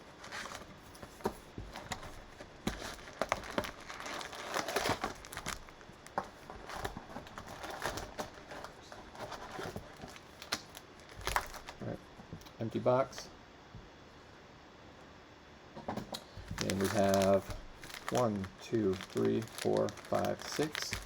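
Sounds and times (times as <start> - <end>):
plastic wrapping crinkling and tearing: 0.2 - 12.0, 16.4 - 21.0
taps and rustles: 0.2 - 12.5, 15.8 - 18.3, 19.0 - 21.0.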